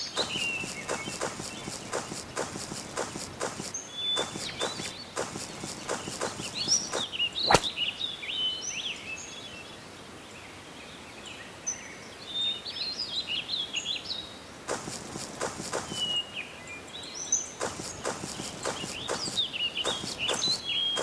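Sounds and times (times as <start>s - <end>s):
sharp click: 0.0s - 7.7s, 14.7s - 16.2s, 17.6s - 21.0s
outdoor hiss: 0.0s - 8.2s, 17.6s - 21.0s
small birds chirping: 0.0s - 9.3s, 13.4s - 21.0s.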